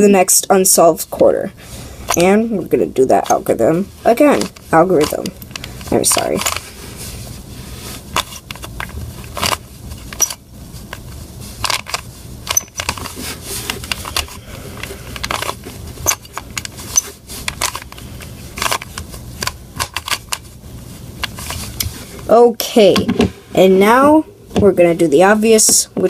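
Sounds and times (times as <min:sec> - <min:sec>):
plastic cube twisting clicks: 0:18.6 - 0:20.4.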